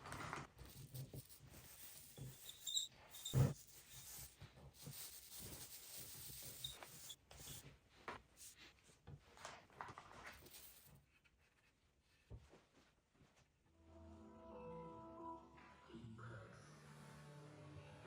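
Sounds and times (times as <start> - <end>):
faint rubbing and scratching: 0.0 - 13.0.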